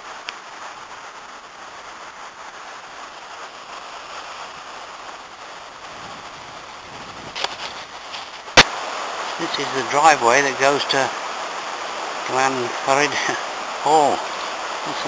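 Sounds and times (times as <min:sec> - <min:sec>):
river rushing: 0:00.0 - 0:15.0.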